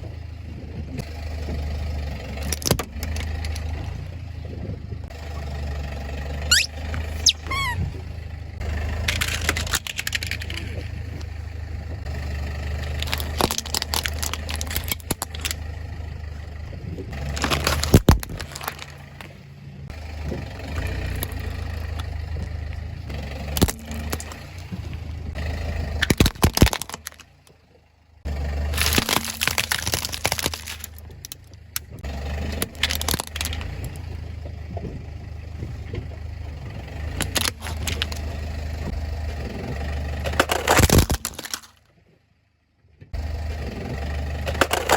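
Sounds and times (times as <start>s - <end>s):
car engine running at low speed: 0.0s - 44.9s
tyres crushing objects: 12.8s - 15.6s, 17.1s - 19.4s, 23.5s - 24.8s, 25.9s - 27.4s, 28.6s - 31.4s, 32.4s - 34.1s, 37.1s - 38.3s, 40.3s - 41.8s, 44.4s - 44.9s.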